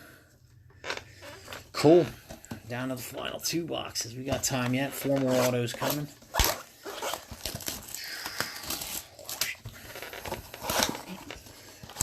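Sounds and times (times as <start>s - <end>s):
plastic wrapping tearing and crinkling: 4.9s - 12.0s.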